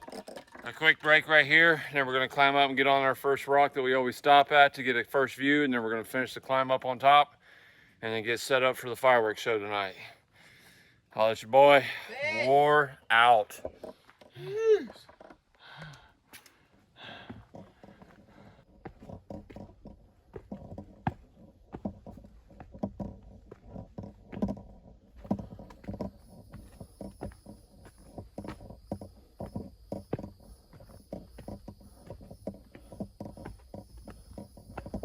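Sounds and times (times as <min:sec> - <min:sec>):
footsteps on rocky trail: 0:16.2 - 0:35.0
gear rustling: 0:17.4 - 0:35.0.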